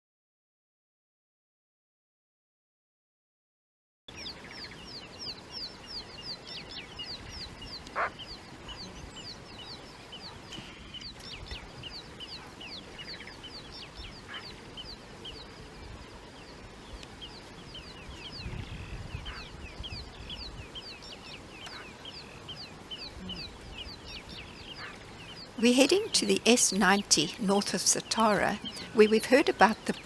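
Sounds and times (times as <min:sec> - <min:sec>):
birds whistling: 0:04.2 - 0:30.0.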